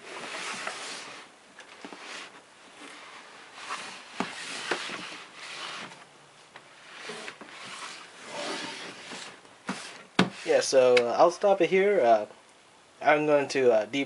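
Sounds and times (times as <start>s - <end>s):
cardboard box rubbing and sliding: 0.0s - 1.3s, 1.9s - 6.0s, 6.8s - 10.6s.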